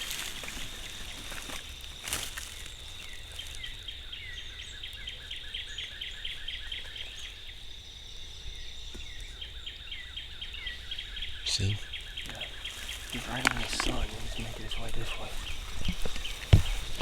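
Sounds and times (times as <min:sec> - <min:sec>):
high insect buzz: 0:00.0 - 0:05.0, 0:11.9 - 0:17.0.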